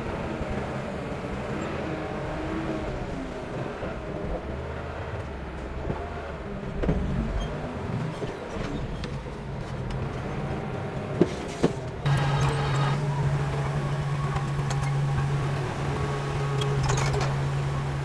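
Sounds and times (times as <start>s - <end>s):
diesel engine running: 12.0s - 18.0s.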